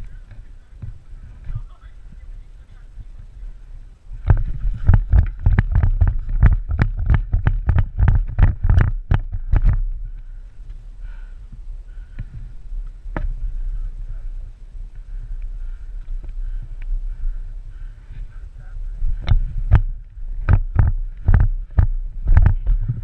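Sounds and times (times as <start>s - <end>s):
running footsteps: 0.0s - 23.0s.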